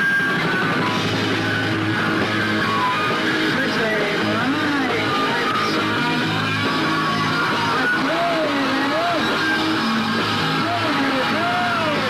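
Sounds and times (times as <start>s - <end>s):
bass guitar: 0.0s - 12.0s
distorted electric guitars: 0.0s - 12.0s
drums: 0.0s - 12.0s
person singing or shouting: 3.8s - 10.0s, 10.6s - 12.0s.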